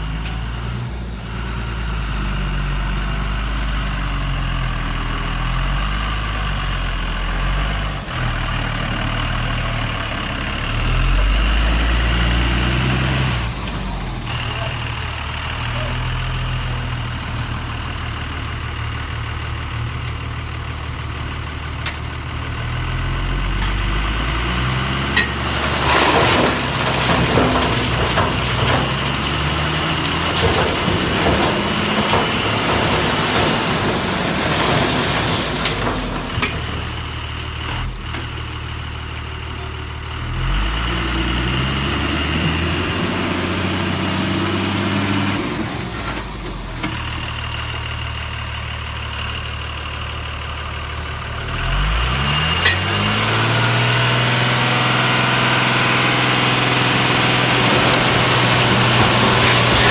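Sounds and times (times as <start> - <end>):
heavy vehicle engine idling: 0.0 - 41.6, 44.8 - 52.0, 52.6 - 59.9
clattering and scraping: 24.6 - 38.4, 54.7 - 59.9.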